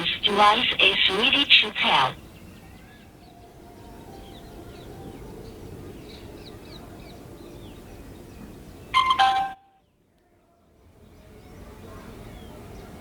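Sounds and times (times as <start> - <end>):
faint background hiss: 0.0 - 2.4
bird chirps: 8.9 - 9.7
two-note prompt tone: 9.0 - 9.7.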